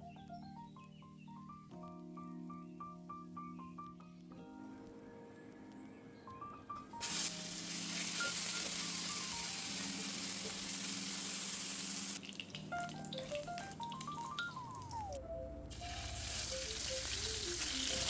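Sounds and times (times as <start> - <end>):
background music: 0.0 - 18.0
food sizzling in a pan: 7.0 - 14.4, 15.7 - 18.0.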